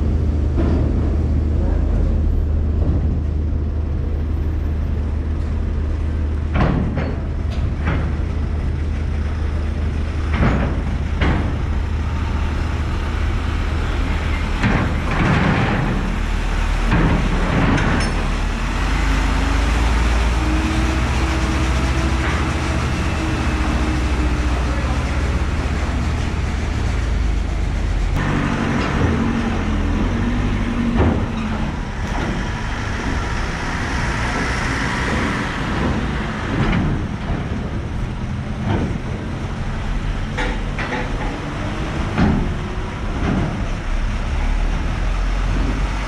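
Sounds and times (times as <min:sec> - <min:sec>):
diesel engine droning: 0:00.0 - 0:46.0.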